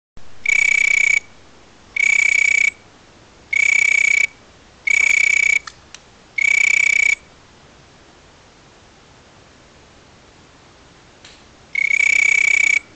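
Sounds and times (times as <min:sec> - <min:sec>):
insect whistling call: 0:00.4 - 0:01.4, 0:02.0 - 0:02.8, 0:03.5 - 0:05.7, 0:06.4 - 0:07.3, 0:11.8 - 0:12.9.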